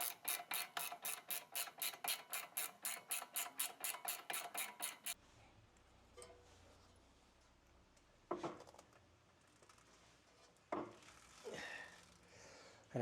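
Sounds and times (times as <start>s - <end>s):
ratcheting wrench clicking: 0.0s - 5.2s.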